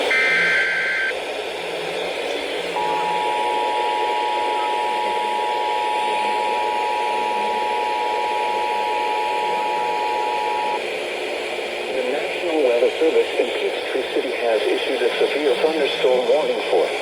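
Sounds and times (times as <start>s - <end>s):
two-tone alarm: 0.1s - 1.2s, 2.8s - 10.8s.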